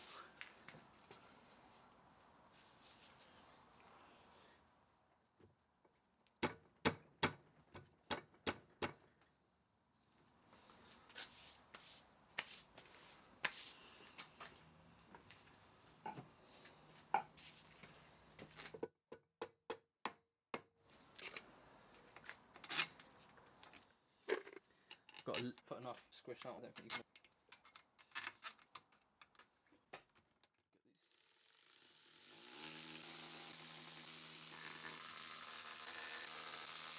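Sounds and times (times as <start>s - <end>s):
soft scrapes and taps: 11.0s - 18.8s.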